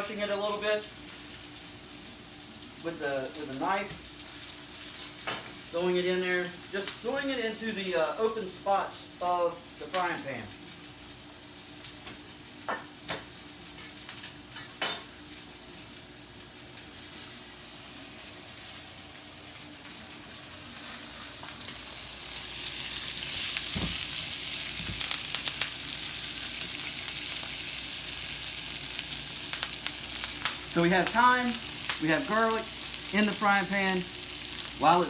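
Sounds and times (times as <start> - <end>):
steak sizzling in a skillet: 0.0 - 35.0.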